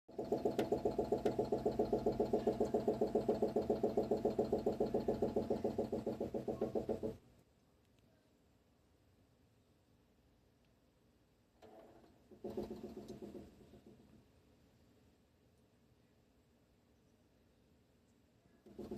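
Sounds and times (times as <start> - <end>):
water heater pulsing hum: 0.1 - 7.2.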